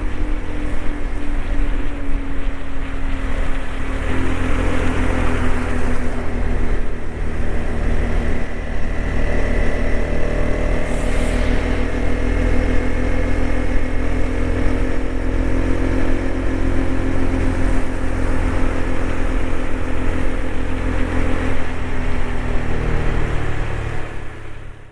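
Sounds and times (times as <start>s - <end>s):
motorcycle engine cruising: 0.0s - 24.9s.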